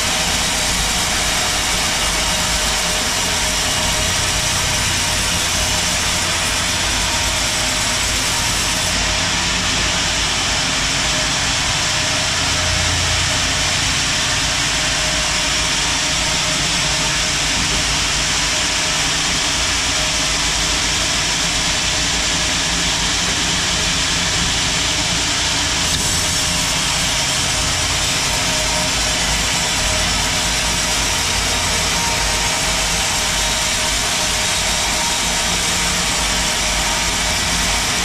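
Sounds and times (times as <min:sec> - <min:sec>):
band saw cutting log: 0:00.0 - 0:12.6, 0:13.2 - 0:38.0
faint steady machine whine: 0:00.0 - 0:38.0.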